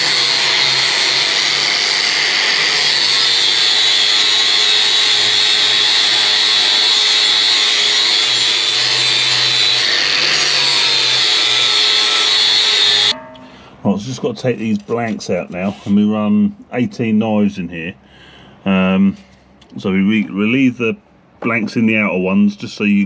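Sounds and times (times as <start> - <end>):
grinder motor hum: 0.0 - 13.2
grinder grinding steel: 0.0 - 13.5.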